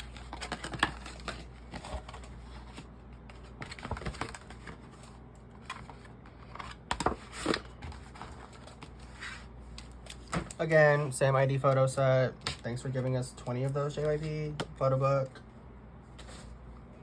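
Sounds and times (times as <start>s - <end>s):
paper and cardboard rustling: 0.0s - 10.7s.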